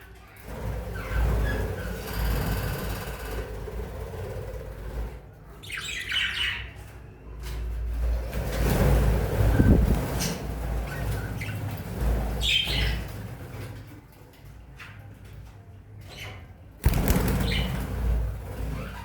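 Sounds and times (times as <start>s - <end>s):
bird wings flapping: 16.8s - 18.8s.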